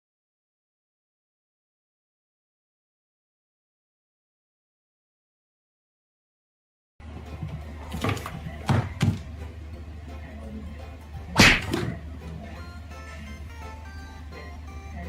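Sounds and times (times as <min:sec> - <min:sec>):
faint music: 0:07.0 - 0:15.0
knocks and thumps: 0:07.2 - 0:09.4.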